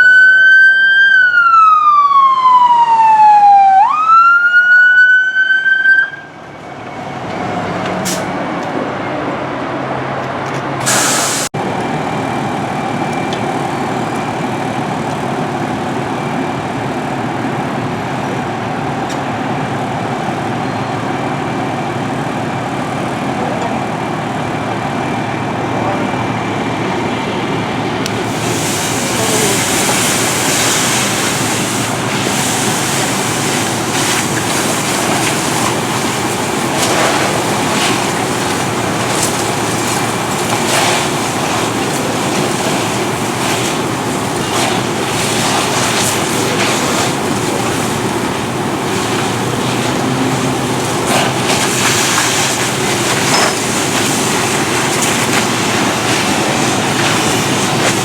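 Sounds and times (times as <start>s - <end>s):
fire engine pump running: 0.0s - 58.0s
hose spraying water: 10.8s - 11.8s, 28.1s - 58.0s.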